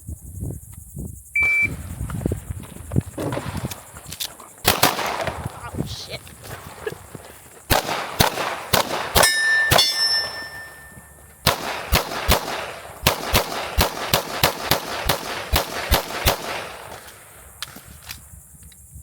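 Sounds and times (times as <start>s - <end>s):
pistol shots: 4.6s - 5.7s, 7.7s - 17.9s.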